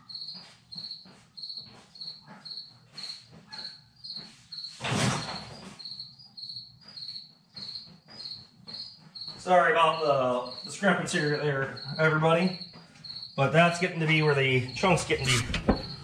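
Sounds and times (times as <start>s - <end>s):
cricket chirping: 0.0s - 15.0s
faint knocks: 14.8s - 16.0s.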